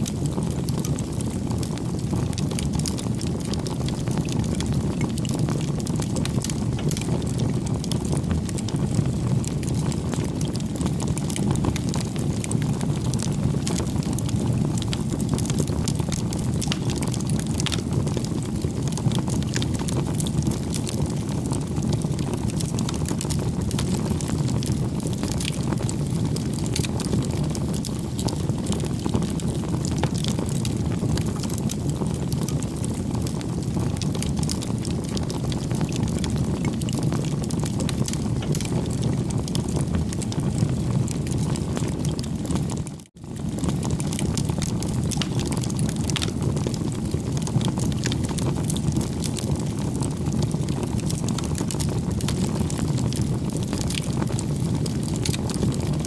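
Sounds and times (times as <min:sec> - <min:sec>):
crackles and pops of burning wood: 0:00.0 - 0:56.0
wood fire rumbling: 0:00.0 - 0:56.0.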